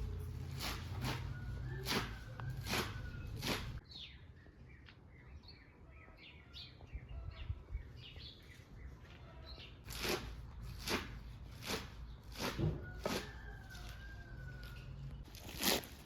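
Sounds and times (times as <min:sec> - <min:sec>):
rasping strokes: 0:00.0 - 0:03.8, 0:09.8 - 0:14.0
small birds chirping: 0:01.2 - 0:10.2.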